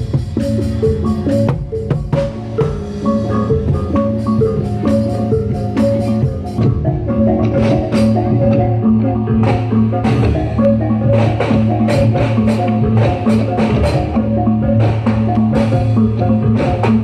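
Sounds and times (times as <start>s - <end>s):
percussion ensemble playing: 0.0s - 17.0s.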